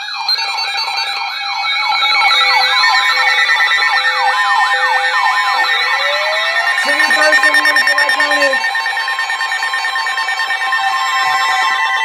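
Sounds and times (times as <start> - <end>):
falling whoop siren: 5.5 - 12.0
high warbling siren: 6.1 - 8.6
steady held alert tones: 6.8 - 8.6.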